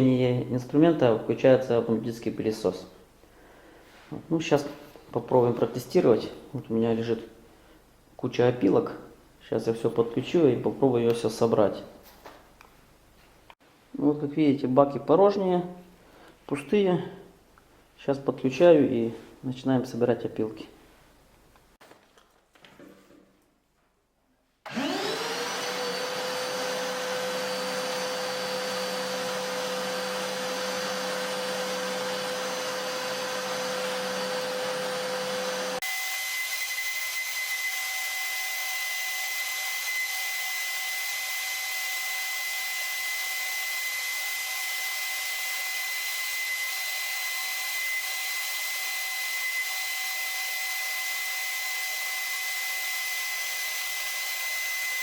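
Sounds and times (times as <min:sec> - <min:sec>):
vacuum motor whine: 0:24.7 - 0:55.0.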